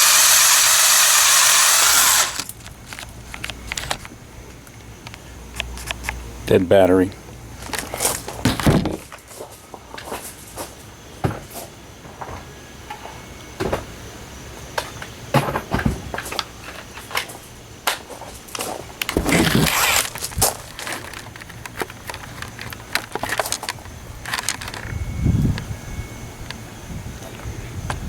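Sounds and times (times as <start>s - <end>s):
rustling scrape: 18.6s - 24.8s.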